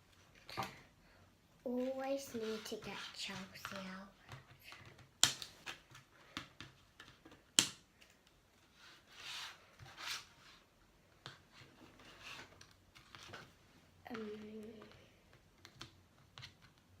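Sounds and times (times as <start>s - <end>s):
plastic snap: 5.2s - 5.8s, 7.5s - 7.8s
packaging clicks and taps: 14.8s - 17.0s.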